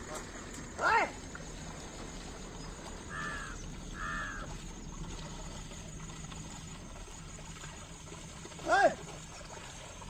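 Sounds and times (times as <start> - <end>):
harsh caw-like bird calls: 3.0 - 4.6.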